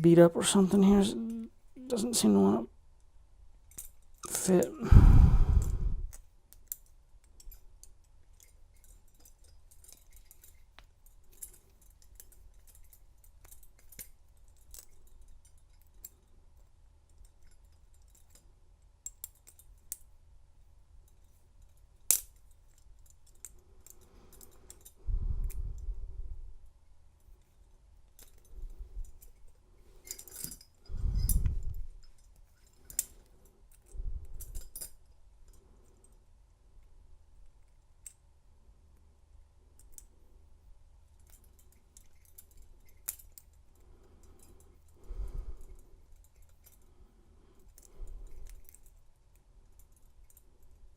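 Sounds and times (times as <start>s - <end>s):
pick tool clicking in a lock: 39.7s - 40.1s, 41.2s - 43.6s.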